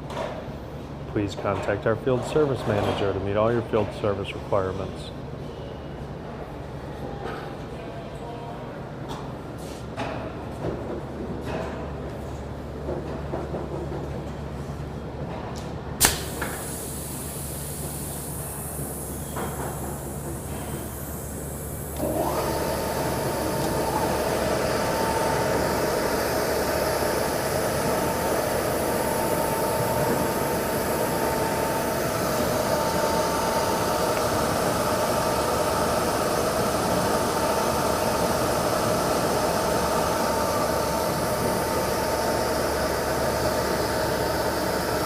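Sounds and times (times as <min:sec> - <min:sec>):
paddle mixer motor whine: 0:16.3 - 0:45.0.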